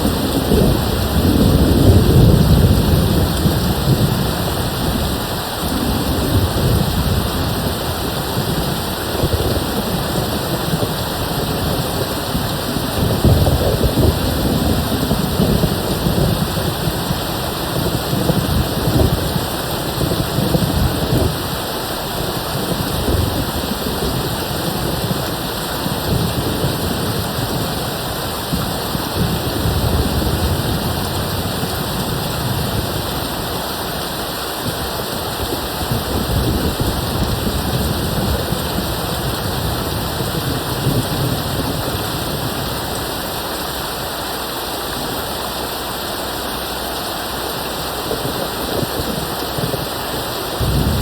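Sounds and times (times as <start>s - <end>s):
distant thunder rumbling: 0.0s - 43.2s, 47.8s - 51.0s
heavy rain: 0.0s - 51.0s.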